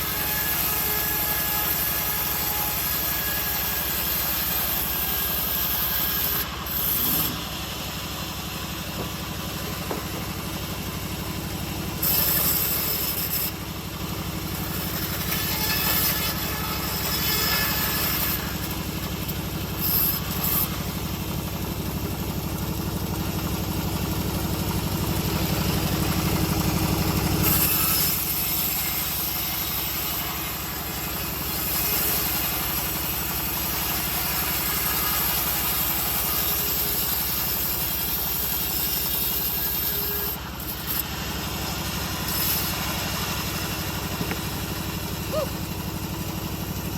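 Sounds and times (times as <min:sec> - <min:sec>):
saw blade hissing through wood: 0:00.0 - 0:07.9, 0:14.2 - 0:21.0, 0:25.4 - 0:45.7
bandsaw mill engine running: 0:00.0 - 0:46.9.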